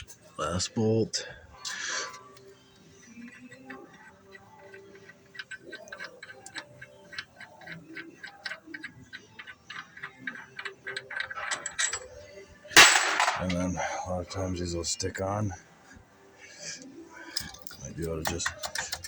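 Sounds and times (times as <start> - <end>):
ratchet wrench clicking: 3.2 - 12.1, 17.4 - 19.0.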